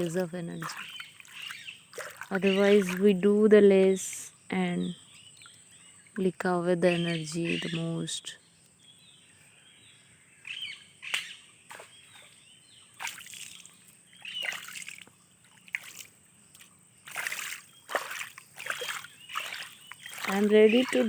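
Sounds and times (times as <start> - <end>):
water splashing: 0.0 - 3.4, 11.7 - 21.0
birds chirping: 0.0 - 21.0.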